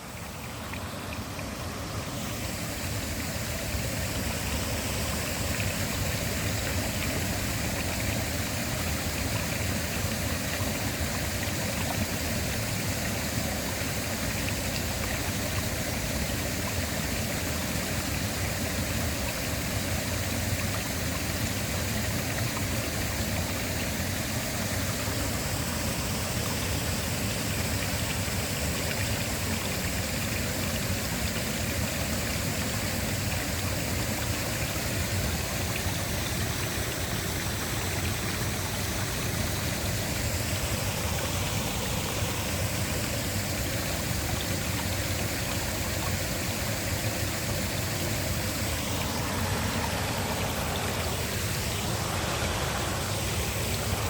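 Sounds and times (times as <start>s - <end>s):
waterfall rushing: 0.0s - 10.1s, 31.8s - 54.0s.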